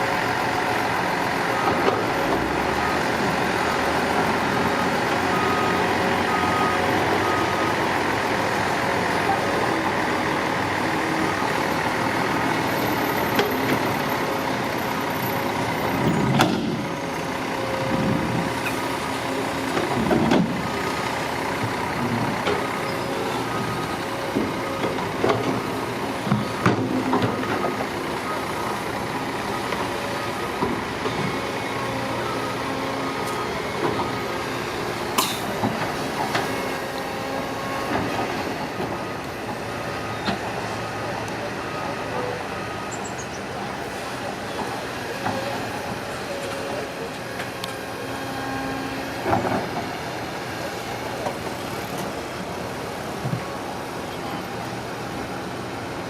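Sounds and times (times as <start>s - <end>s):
heavy machine engine running: 0.0s - 56.0s
reversing alarm beeping: 0.9s - 19.5s, 22.5s - 35.0s, 36.1s - 49.0s
clunks: 16.0s - 17.0s, 19.7s - 20.7s.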